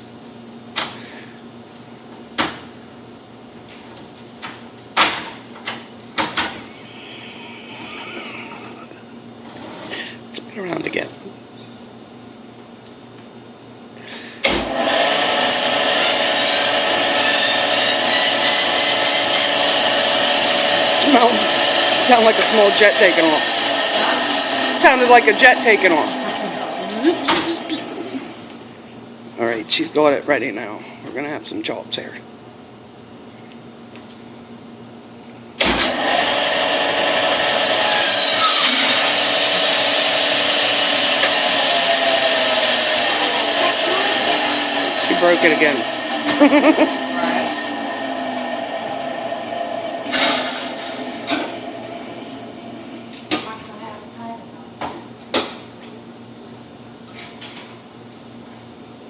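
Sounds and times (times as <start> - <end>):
band saw whining: 14.6 - 28.4, 35.6 - 53.2.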